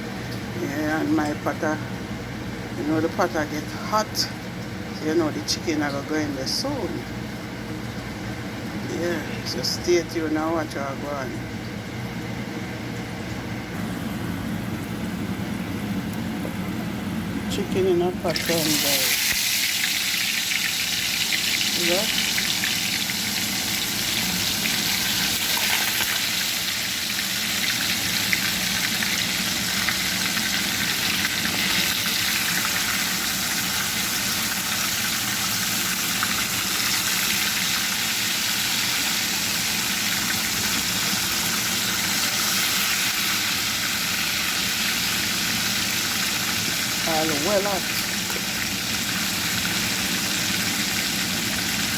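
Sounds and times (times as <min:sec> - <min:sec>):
chicken sizzling in a pot: 0:18.2 - 0:51.9.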